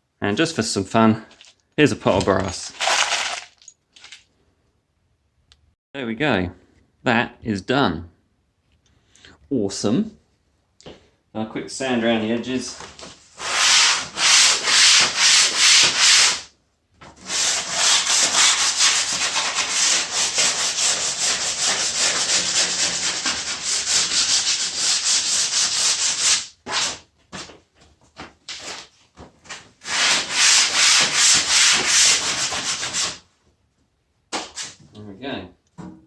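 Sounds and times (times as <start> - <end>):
sandpaper rubbing on wood: 13.4 - 16.5, 17.2 - 27.0, 29.8 - 33.2.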